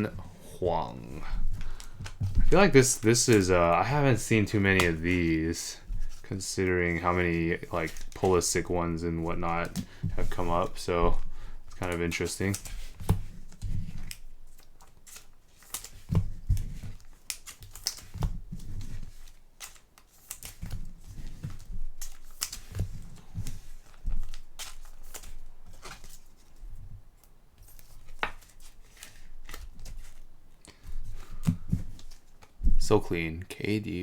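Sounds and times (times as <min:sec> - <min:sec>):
cards sliding and clicking: 0:01.5 - 0:06.2, 0:11.7 - 0:26.6, 0:27.6 - 0:32.6.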